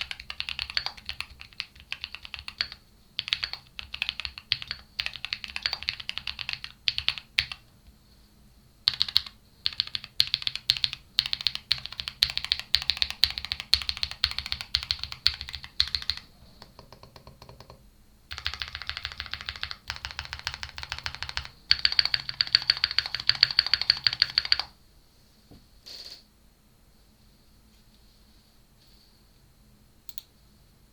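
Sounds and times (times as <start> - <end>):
mechanical keyboard typing: 0.0 - 7.7, 8.8 - 24.7.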